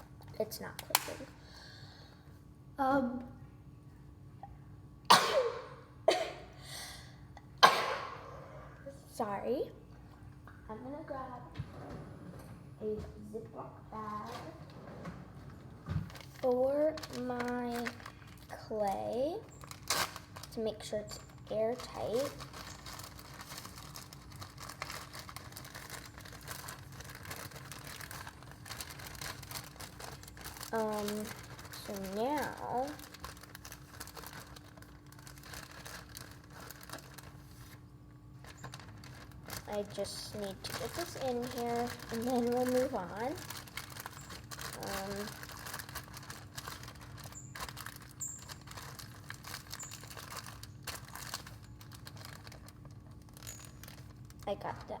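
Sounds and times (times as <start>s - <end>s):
plastic bag crinkling: 14.0s - 55.0s.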